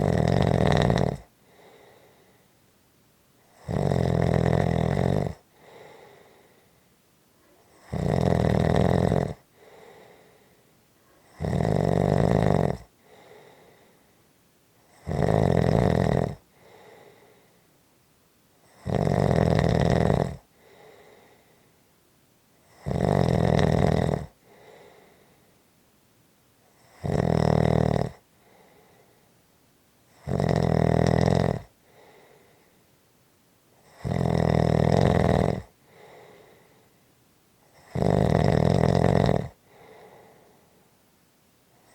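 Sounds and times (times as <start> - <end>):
loud rasping snores: 0.0 - 2.0, 3.5 - 6.3, 7.7 - 10.2, 11.3 - 13.7, 14.9 - 17.2, 18.6 - 21.3, 22.7 - 25.1, 26.8 - 28.7, 30.1 - 32.2, 33.8 - 36.6, 37.7 - 40.4
faint breath sound: 1.2 - 2.8, 5.4 - 7.9, 9.4 - 11.4, 12.8 - 15.0, 16.4 - 17.8, 20.4 - 22.0, 24.3 - 25.7, 28.2 - 29.5, 31.7 - 33.0, 35.7 - 38.0, 39.5 - 41.1.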